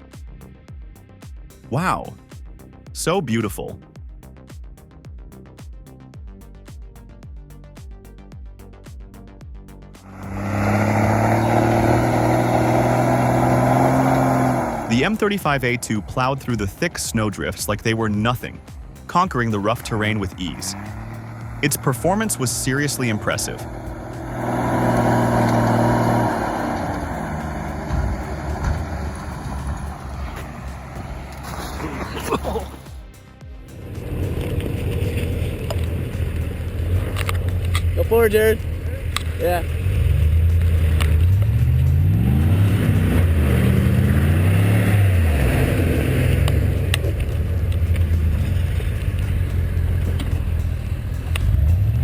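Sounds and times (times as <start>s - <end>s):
truck diesel engine working hard: 10.0s - 52.0s
engine knocks: 10.5s - 31.5s, 33.0s - 52.0s.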